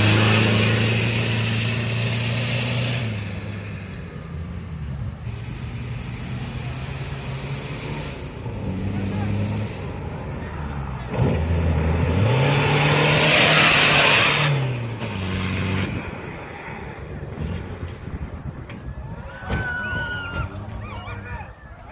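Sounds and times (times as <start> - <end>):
engine revving hard: 0.0 - 3.4, 11.0 - 16.1.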